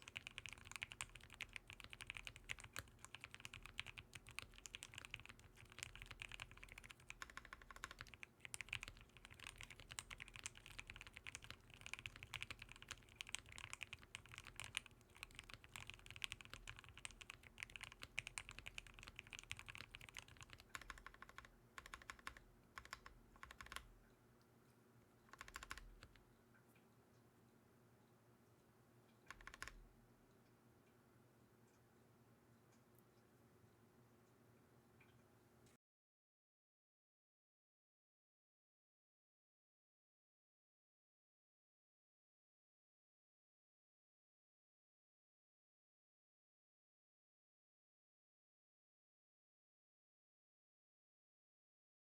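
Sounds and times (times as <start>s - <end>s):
mechanical keyboard typing: 0.0s - 23.9s, 25.3s - 26.2s, 29.3s - 29.8s.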